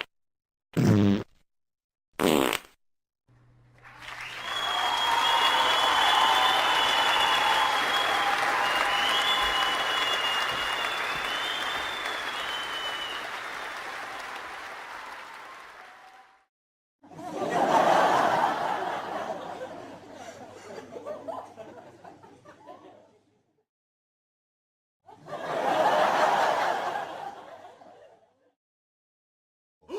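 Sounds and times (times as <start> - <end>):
crowd applauding: 3.8 - 16.5, 25.4 - 27.4
whistles from crowd: 3.9 - 14.4
audience laughter: 17.0 - 23.5, 25.1 - 28.4.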